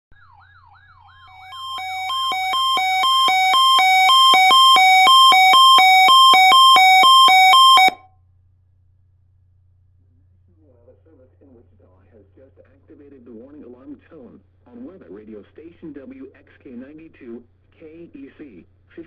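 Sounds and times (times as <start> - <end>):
electronic alert siren wailing: 0.1 - 8.1
two-tone warning warble: 1.3 - 8.0.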